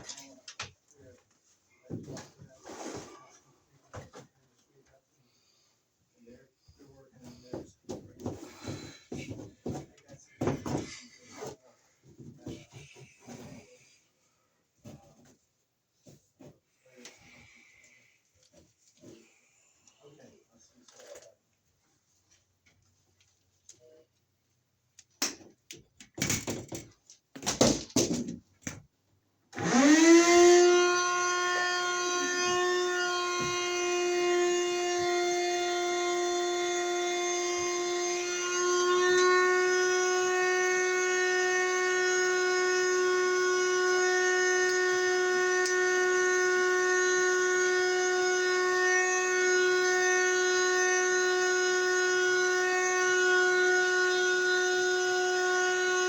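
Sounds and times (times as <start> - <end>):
electric motor whining: 29.6 - 56.0.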